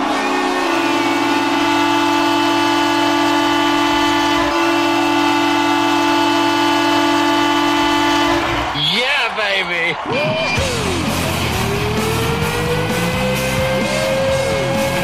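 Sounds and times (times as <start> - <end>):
goal horn blast: 0.0 - 8.8.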